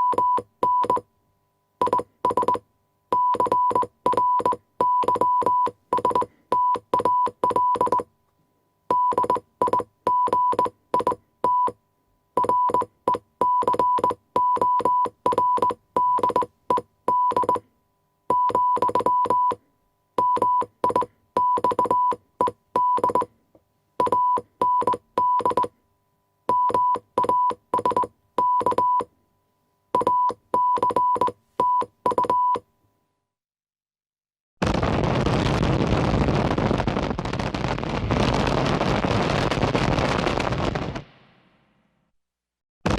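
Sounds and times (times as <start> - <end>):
morse code beeps: 0.0 - 1.1, 1.8 - 8.1, 8.9 - 11.8, 12.4 - 17.7, 18.3 - 23.3, 24.0 - 25.7, 26.5 - 29.1, 29.9 - 32.6.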